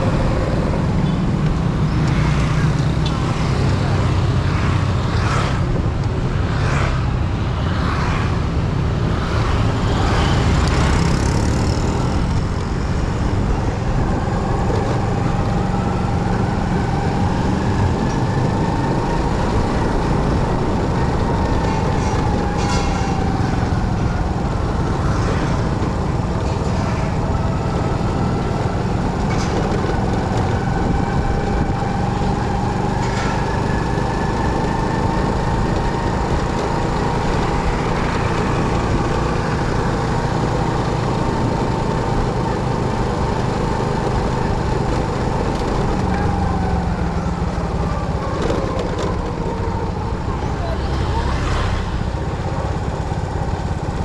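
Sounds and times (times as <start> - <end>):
motorcycle engine rumble: 0.0 - 54.0.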